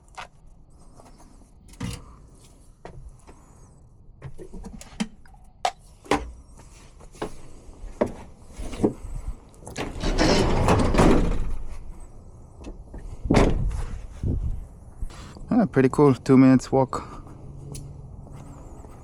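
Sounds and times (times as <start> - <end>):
vehicle passing: 14.6 - 19.0.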